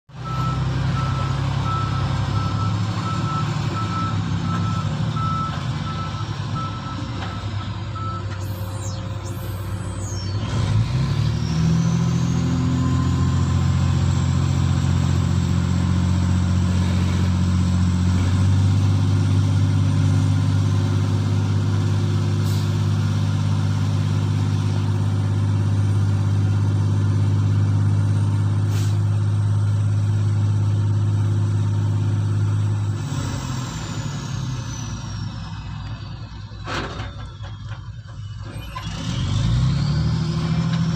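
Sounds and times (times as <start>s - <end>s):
excavator diesel engine under load: 0.1s - 40.9s
high whine: 8.2s - 13.2s.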